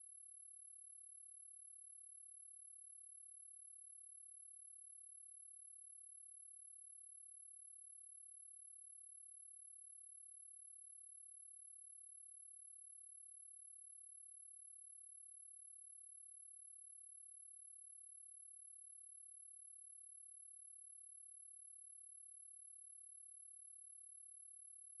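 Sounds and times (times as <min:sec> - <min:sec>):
high-pitched sine test tone: 0:11.9 - 0:25.0.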